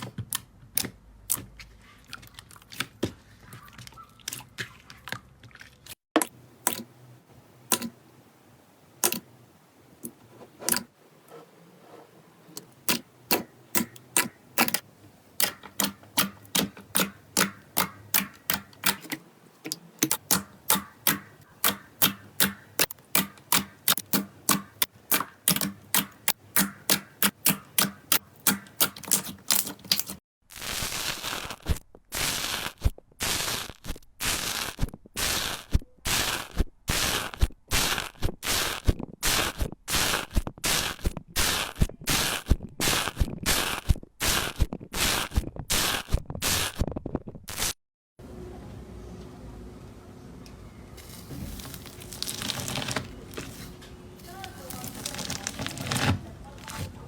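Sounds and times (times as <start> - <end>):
slime clicking and popping: 7.7 - 7.9, 9.0 - 9.2, 19.7 - 30.1.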